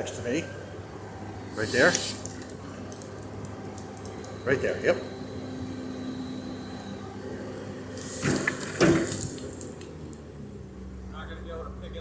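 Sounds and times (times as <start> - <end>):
rushing hissing noise: 1.4 - 2.4.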